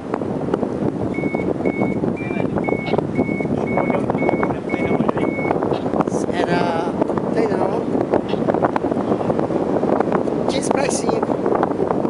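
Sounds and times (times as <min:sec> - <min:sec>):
rushing wind: 0:00.0 - 0:12.0
variometer beeping: 0:01.1 - 0:05.9.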